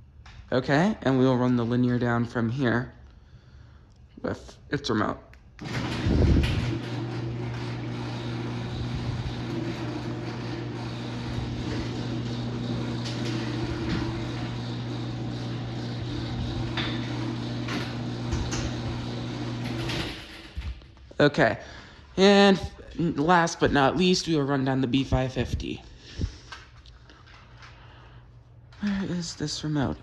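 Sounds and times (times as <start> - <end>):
garage door opener motor hum: 5.6 - 20.9.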